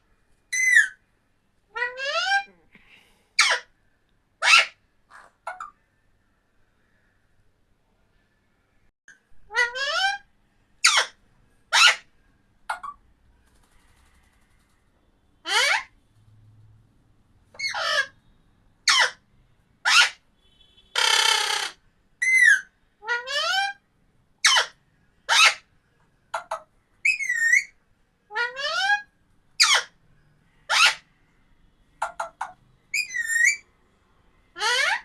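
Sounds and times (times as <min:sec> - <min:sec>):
parrot harsh screech: 0:15.4 - 0:15.9, 0:17.6 - 0:18.2, 0:19.8 - 0:20.2, 0:20.9 - 0:23.8, 0:28.3 - 0:30.0, 0:30.6 - 0:31.1, 0:34.6 - 0:35.0.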